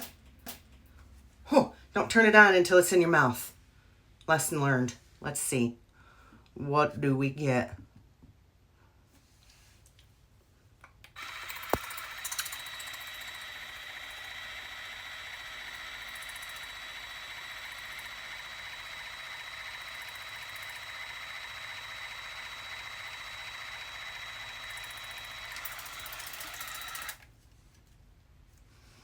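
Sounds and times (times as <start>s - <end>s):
water flosser pump buzzing: 11.1s - 27.2s.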